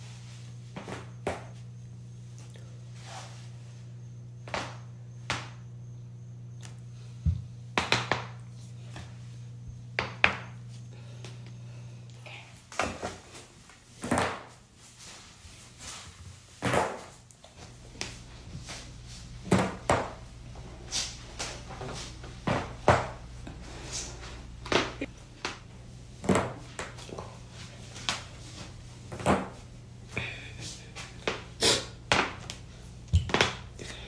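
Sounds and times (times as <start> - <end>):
low hum: 0.0 - 13.8.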